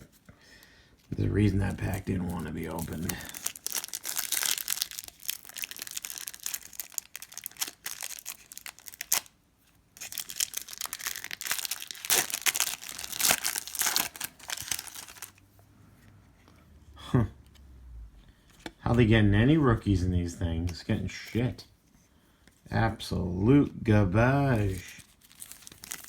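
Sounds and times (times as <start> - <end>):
trading cards rustling: 1.0 - 9.3, 10.0 - 15.4, 24.2 - 26.0
cellophane wrapper crinkling: 1.4 - 15.4, 24.4 - 26.0.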